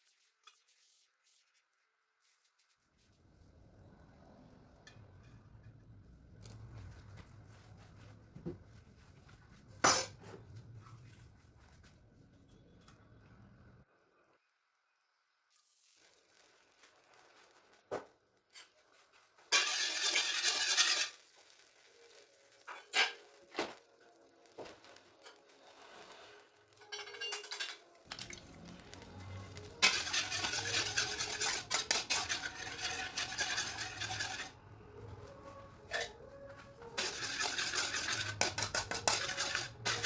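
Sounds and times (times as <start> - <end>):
metal utensil scraping cookware: 19.4 - 21.2, 22.6 - 23.4, 25.2 - 34.6, 35.8 - 40.0.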